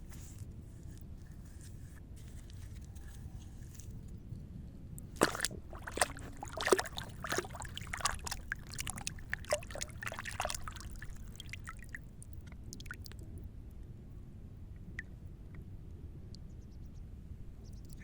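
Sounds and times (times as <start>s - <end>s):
water splashing and trickling: 5.0s - 13.2s.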